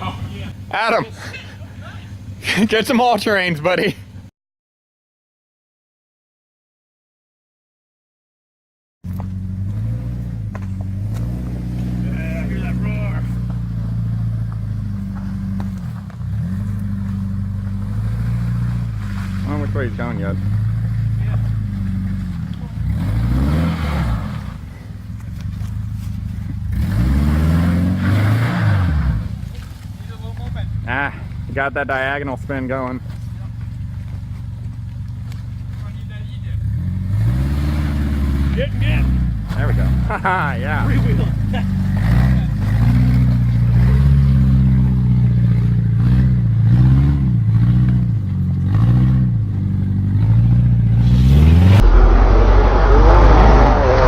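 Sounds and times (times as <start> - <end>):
tires spinning: 9.1 - 54.0
car engine revving hard: 9.4 - 24.7, 26.7 - 29.4, 36.6 - 54.0.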